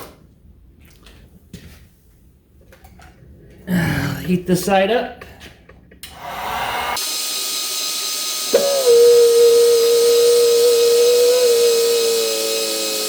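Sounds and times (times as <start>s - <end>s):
loud steady whine: 6.0s - 7.2s
heat gun hiss of air: 6.1s - 13.0s.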